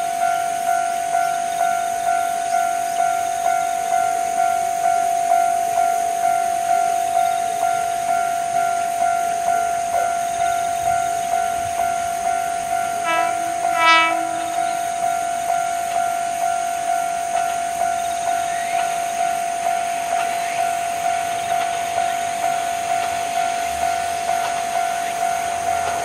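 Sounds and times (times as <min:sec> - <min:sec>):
level crossing bell ringing: 0:06.3 - 0:18.0
train horn blast: 0:11.6 - 0:16.6.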